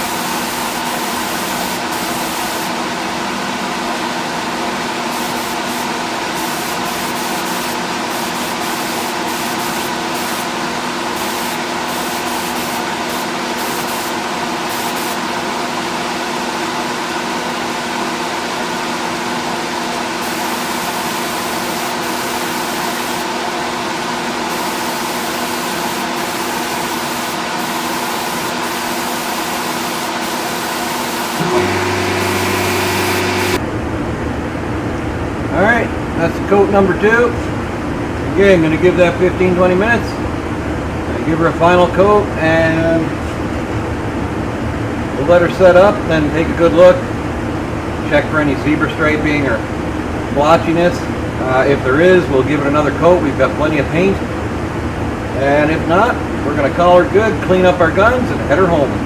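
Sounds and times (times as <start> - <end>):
spray gun hissing: 0.0 - 2.8, 5.0 - 15.2, 20.0 - 23.5, 24.3 - 33.6
steady hum: 0.0 - 59.0.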